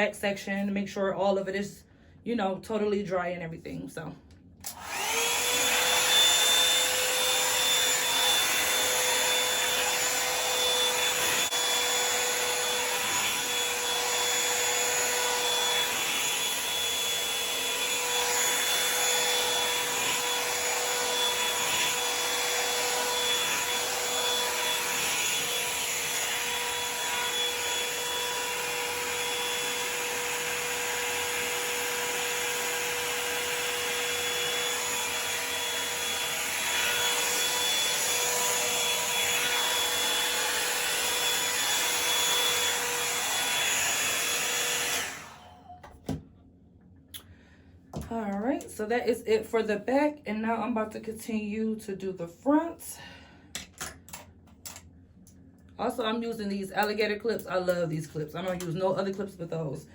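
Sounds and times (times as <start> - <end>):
hot-air brush dryer blowing: 4.6 - 46.2
motor whine: 4.7 - 45.7.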